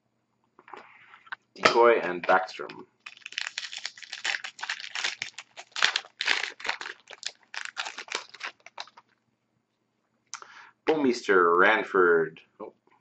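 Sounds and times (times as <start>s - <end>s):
cards rustling: 3.0s - 9.0s
foil wrapper crinkling and tearing: 3.0s - 9.1s.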